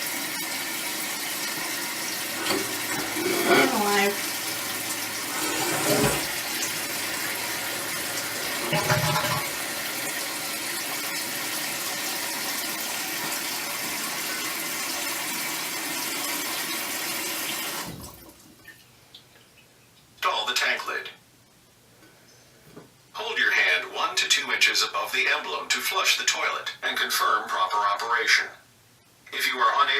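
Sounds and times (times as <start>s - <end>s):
toilet tank refilling: 0.0s - 18.8s.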